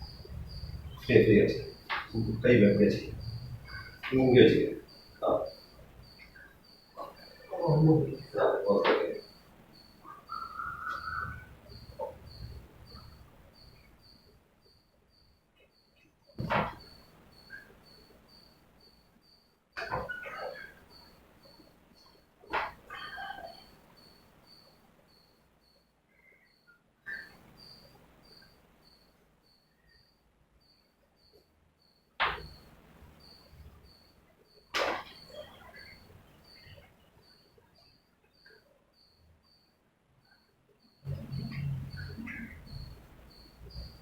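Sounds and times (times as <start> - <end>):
faint high-pitched chirp: 0.0 - 44.0
loud sharp thump: 16.4 - 16.9, 34.8 - 35.1.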